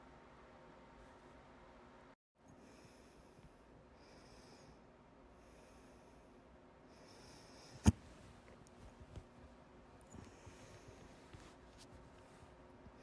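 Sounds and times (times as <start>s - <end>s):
faint breathing: 2.5s - 8.0s, 10.1s - 11.6s.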